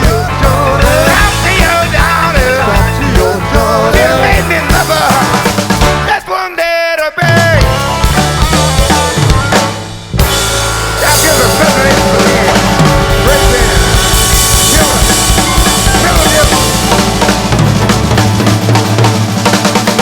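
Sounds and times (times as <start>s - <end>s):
bass drum: 0.0s - 6.1s, 7.2s - 20.0s
blues band playing: 0.0s - 20.0s
snare drum: 11.0s - 20.0s.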